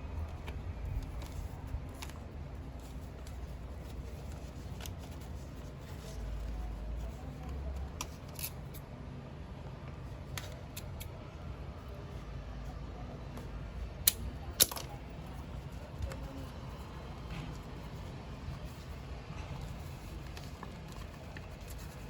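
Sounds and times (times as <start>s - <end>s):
packaging clicks and crinkling: 0.2s - 8.7s, 13.4s - 22.0s.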